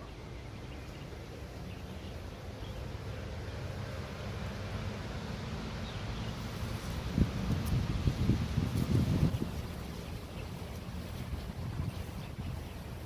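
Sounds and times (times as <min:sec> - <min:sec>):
outdoor background hiss: 0:00.0 - 0:13.0
wind on microphone: 0:06.5 - 0:13.0.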